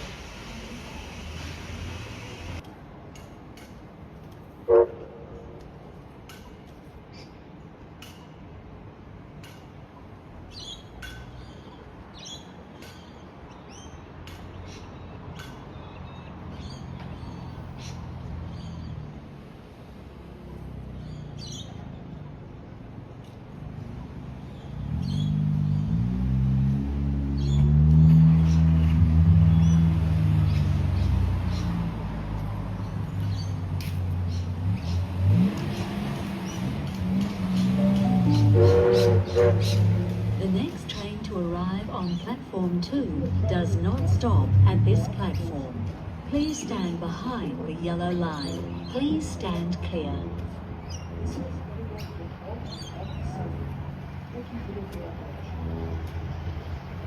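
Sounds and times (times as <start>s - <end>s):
vehicle engine revving: 24.8s - 32.0s, 34.3s - 40.4s
birds chirping: 37.4s - 40.1s.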